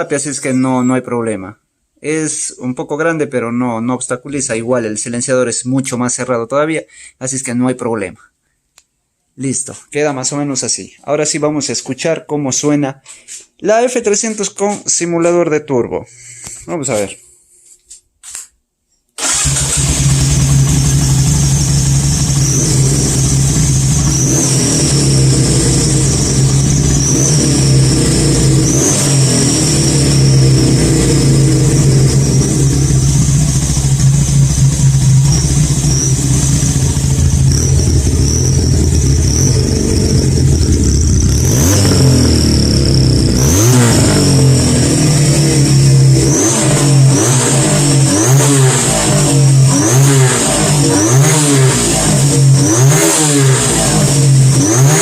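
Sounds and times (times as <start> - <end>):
motorcycle engine revving: 19.2 - 55.0
high exhaust whistle: 25.8 - 42.1.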